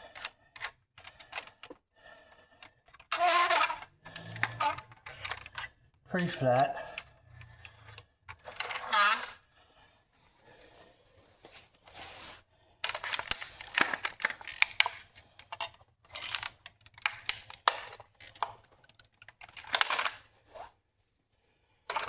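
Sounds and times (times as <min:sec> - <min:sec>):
toy car plastic crackling: 0:02.9 - 0:06.4, 0:07.3 - 0:09.4, 0:12.8 - 0:20.3.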